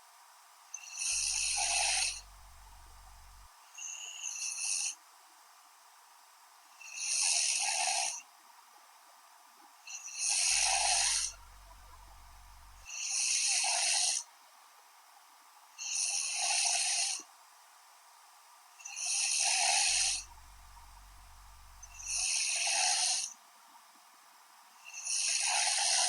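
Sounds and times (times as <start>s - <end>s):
woman snoring: 1.0s - 3.5s, 10.2s - 14.2s, 15.9s - 17.2s, 18.9s - 23.3s, 24.9s - 26.0s.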